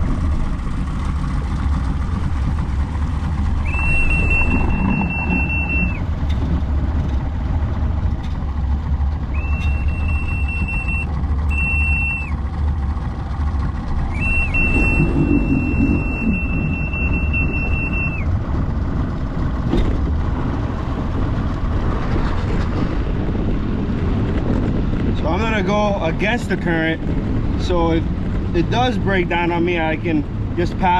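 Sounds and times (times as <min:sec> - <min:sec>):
engine low rumble: 0:00.0 - 0:30.9
high-pitched electronic beep: 0:03.7 - 0:06.0, 0:09.4 - 0:12.3, 0:14.2 - 0:18.2.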